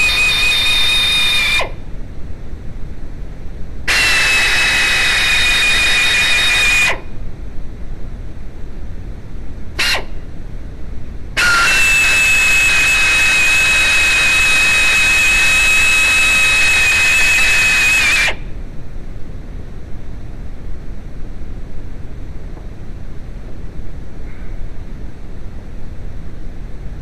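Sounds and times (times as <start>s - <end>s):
brief falling squeal: 0.0s - 1.8s, 3.9s - 7.0s, 11.4s - 18.4s
power tool high whine: 0.0s - 1.8s, 3.9s - 7.0s, 11.4s - 18.4s.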